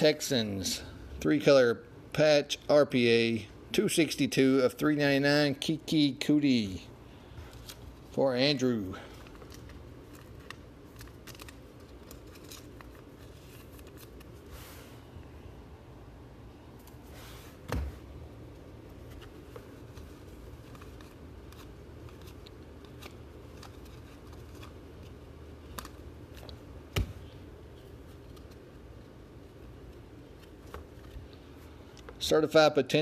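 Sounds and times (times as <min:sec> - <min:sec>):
cards rustling: 0:07.3 - 0:15.0, 0:18.4 - 0:32.4.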